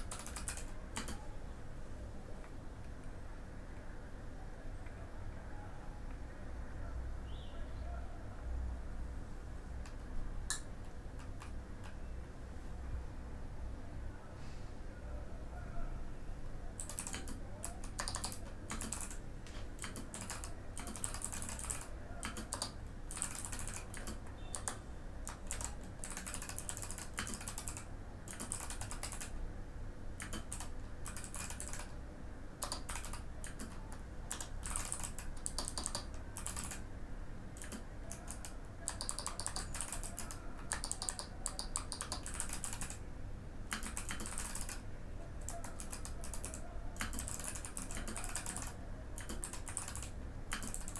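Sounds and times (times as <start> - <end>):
mechanical keyboard typing: 0.0 - 1.3, 9.8 - 12.0, 16.8 - 19.2, 19.8 - 29.4, 30.2 - 32.0, 32.6 - 36.8, 37.6 - 43.0, 43.7 - 50.9.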